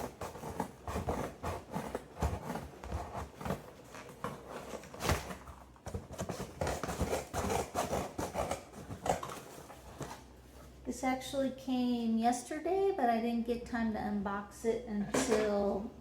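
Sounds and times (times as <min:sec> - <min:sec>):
cardboard box being cut open: 0:00.0 - 0:10.2.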